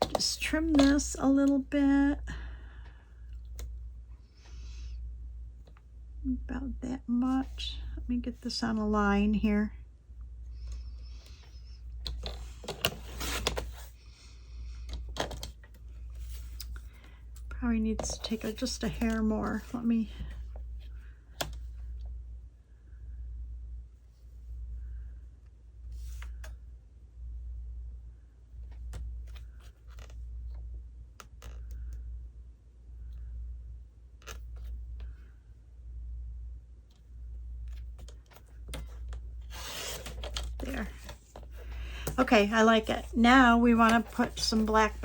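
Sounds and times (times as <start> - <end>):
steady low hum: 0.0 - 45.0
paper rustling and sliding: 12.2 - 13.9, 38.7 - 45.0.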